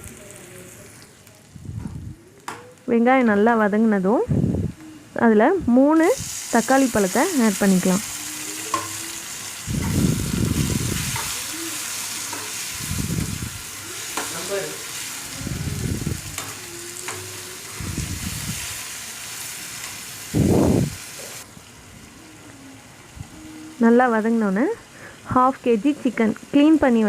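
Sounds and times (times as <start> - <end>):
vegetables sizzling in oil: 0.0 - 1.6, 5.9 - 27.0
spoon stirring in pan: 10.6 - 12.8.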